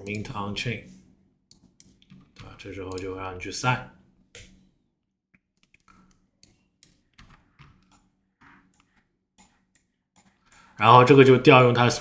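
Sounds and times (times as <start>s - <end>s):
keyboard and mouse clicks: 0.0s - 0.4s, 1.5s - 3.2s, 4.4s - 4.7s, 5.6s - 10.7s.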